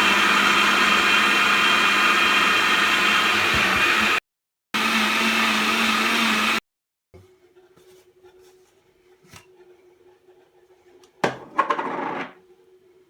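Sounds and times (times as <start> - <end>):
electric blender running: 0.0 - 4.2, 4.8 - 6.6.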